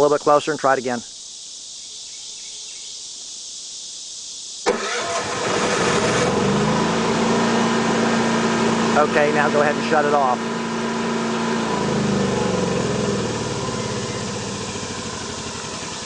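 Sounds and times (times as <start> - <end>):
generator engine starting and running: 4.7 - 16.0.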